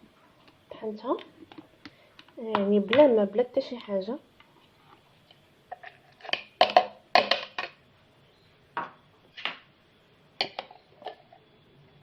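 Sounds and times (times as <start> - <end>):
kitchen utensils knocking and clinking: 6.2 - 7.8.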